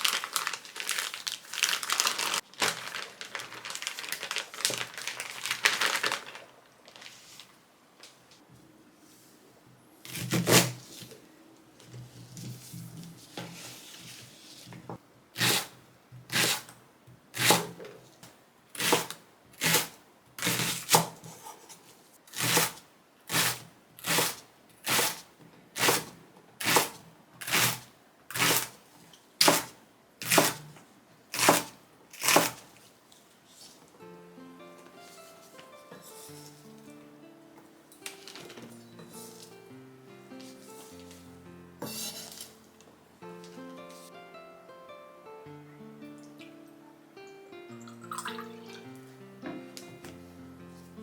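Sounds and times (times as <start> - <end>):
soft rustling: 0.0 - 9.6.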